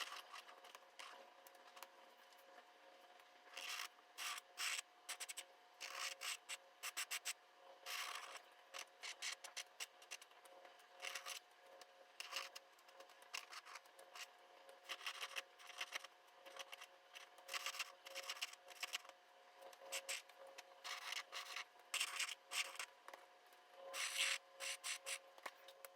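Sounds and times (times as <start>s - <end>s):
drawing tool scratching on paper: 14.9s - 19.0s, 20.9s - 22.9s, 23.9s - 25.2s.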